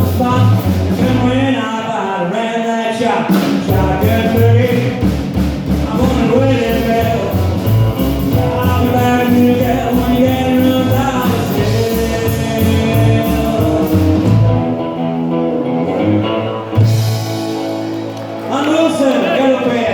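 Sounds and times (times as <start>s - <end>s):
drums: 0.0s - 2.0s, 2.9s - 19.9s
person singing: 0.0s - 14.6s
live rockabilly band: 0.0s - 19.9s.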